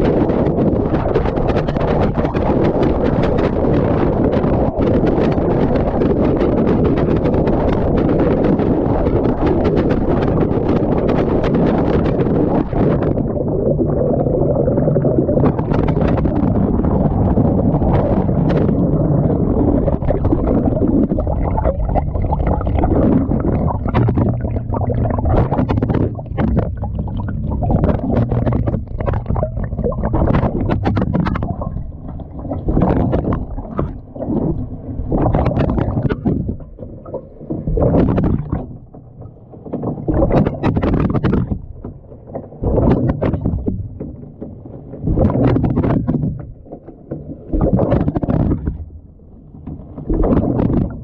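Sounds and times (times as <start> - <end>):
water sloshing in washing machine: 15.2 - 38.9, 39.6 - 41.8.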